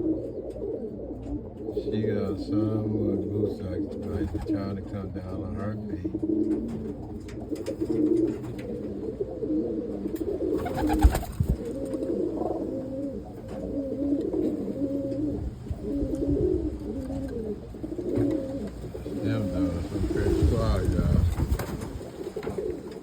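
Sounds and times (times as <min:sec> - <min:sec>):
pigeons cooing: 0:00.0 - 0:23.0
rustle and knock: 0:13.0 - 0:19.2, 0:20.3 - 0:23.0.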